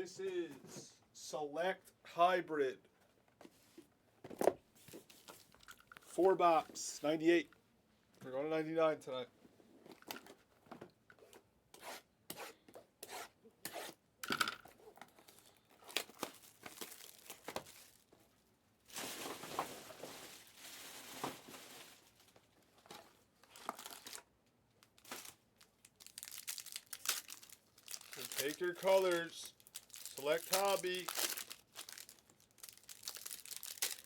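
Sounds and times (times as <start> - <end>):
plastic wrapping rustling: 15.2 - 18.2, 18.8 - 22.5, 23.4 - 34.0
plastic wrapping crackling: 15.8 - 18.1, 18.9 - 22.4, 23.4 - 34.0.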